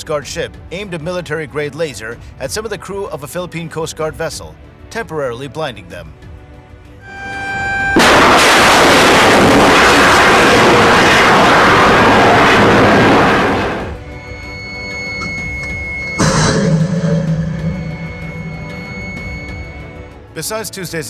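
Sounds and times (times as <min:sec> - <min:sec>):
background music: 0:00.0 - 0:21.0
military live fire blast roar: 0:07.0 - 0:20.0.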